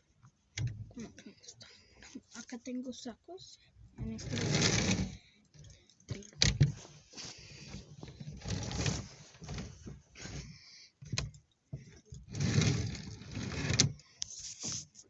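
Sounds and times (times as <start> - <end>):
hangers clicking and knocking: 4.0 - 7.0, 7.6 - 14.0
clothes rustling: 6.6 - 10.5.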